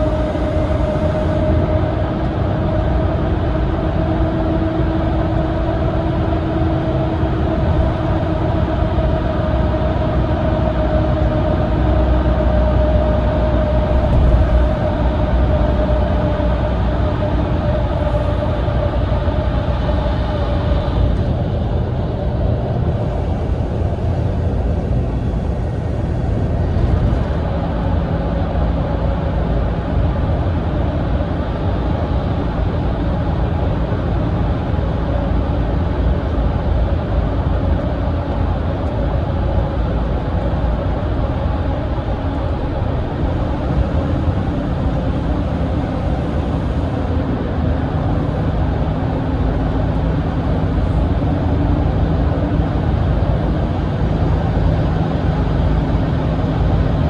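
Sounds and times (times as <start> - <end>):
light whine: 0.0 - 3.6, 10.7 - 28.6
engine drone and road rumble: 0.0 - 57.0.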